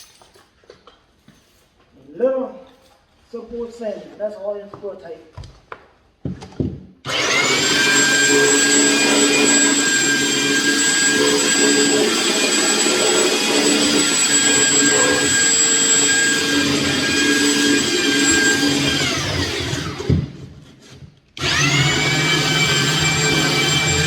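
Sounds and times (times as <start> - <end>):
electric sander whining: 7.1 - 20.1, 21.4 - 24.0.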